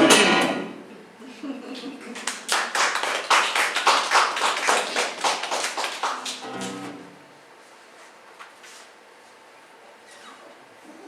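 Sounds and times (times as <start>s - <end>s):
audience applauding: 2.0s - 7.0s.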